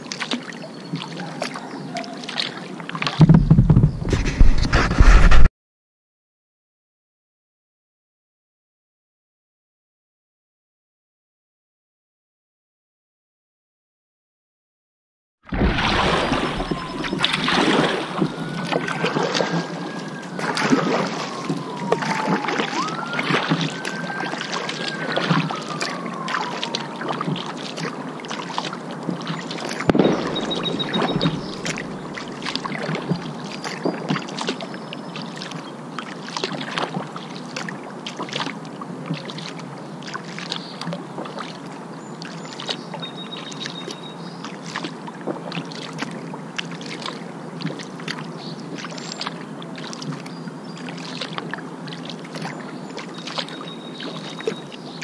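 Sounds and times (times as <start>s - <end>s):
paddle splashing in water: 0.0s - 5.5s, 15.5s - 55.0s
water rushing along hull: 0.0s - 5.5s, 15.5s - 55.0s
wailing tone: 15.9s - 27.4s, 29.9s - 33.2s.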